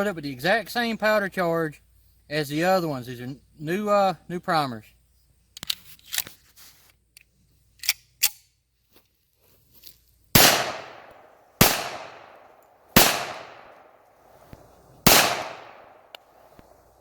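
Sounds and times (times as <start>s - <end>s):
pistol shots with echo: 10.4s - 14.0s, 15.0s - 16.5s.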